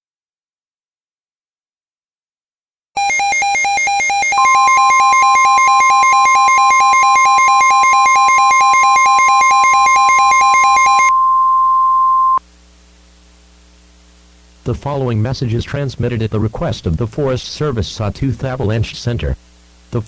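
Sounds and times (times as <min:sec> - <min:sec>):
pulsing buzzy alarm tone: 0:03.0 - 0:12.4
steady high tone: 0:03.0 - 0:12.4.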